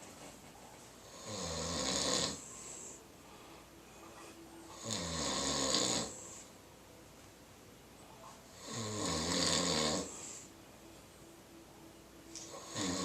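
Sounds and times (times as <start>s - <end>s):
dog snoring: 1.0s - 3.0s, 4.7s - 6.5s, 8.5s - 10.5s, 12.4s - 13.0s.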